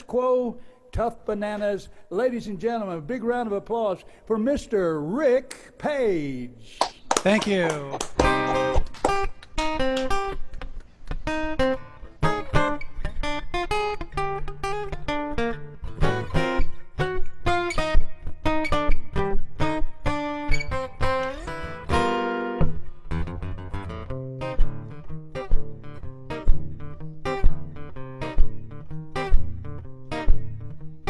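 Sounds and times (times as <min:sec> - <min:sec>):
acoustic guitar playing: 0:07.3 - 0:31.0.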